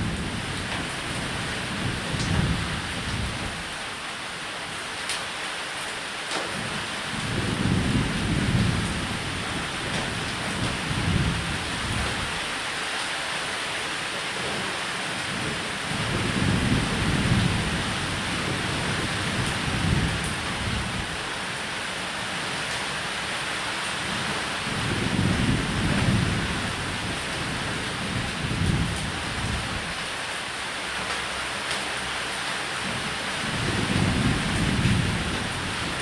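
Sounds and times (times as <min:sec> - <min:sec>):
low rolling thunder: 0:00.0 - 0:03.7, 0:07.1 - 0:12.5, 0:15.3 - 0:21.4, 0:24.0 - 0:30.1, 0:32.8 - 0:36.0
heavy rain: 0:00.0 - 0:36.0.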